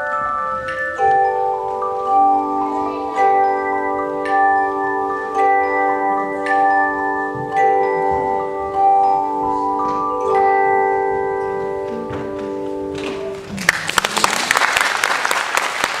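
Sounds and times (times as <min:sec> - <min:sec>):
tone chimes ringing chords: 0:00.0 - 0:13.5
audience applause: 0:13.4 - 0:16.0.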